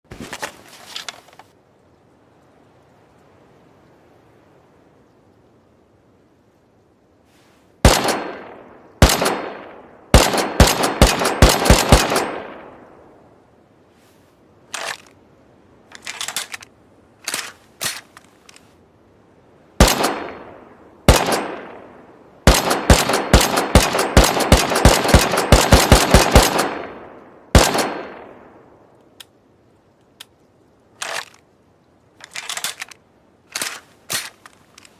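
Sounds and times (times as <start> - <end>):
rapid rifle fire: 7.8 - 12.6, 19.8 - 20.4, 21.1 - 21.8, 22.4 - 28.3
rifle shots with echo: 7.8 - 13.0, 19.8 - 28.6
faint snaps and pops: 29.0 - 30.4.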